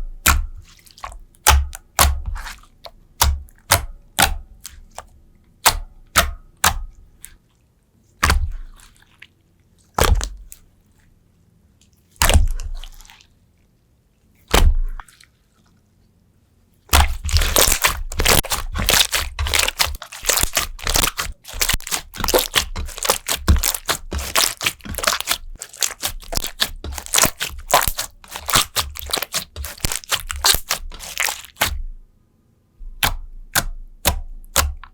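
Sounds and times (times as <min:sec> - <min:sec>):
slime cracking and popping: 0:16.9 - 0:31.8, 0:33.0 - 0:34.9.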